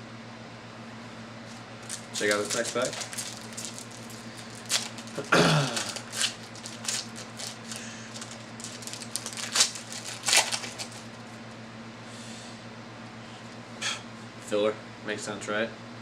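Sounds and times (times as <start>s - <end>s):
cards crinkling and clicking: 1.5s - 11.2s
foil pack tearing: 1.5s - 11.2s.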